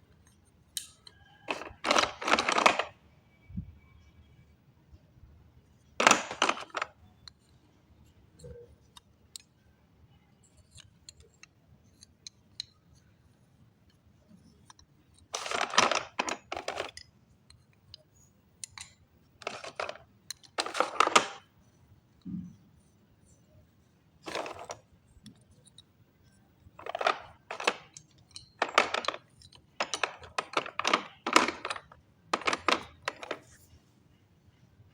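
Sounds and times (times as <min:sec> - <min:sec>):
slate pencils clattering together: 0:00.8 - 0:02.9, 0:06.0 - 0:06.9, 0:14.4 - 0:18.0, 0:18.6 - 0:21.5, 0:24.2 - 0:24.8, 0:26.7 - 0:33.7.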